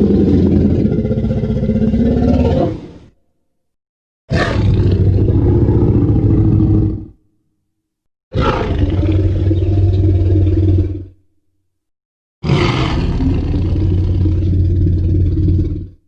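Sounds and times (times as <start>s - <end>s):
dinosaur roar: 0.0s - 3.1s, 4.3s - 7.2s, 8.3s - 11.2s, 12.4s - 16.0s.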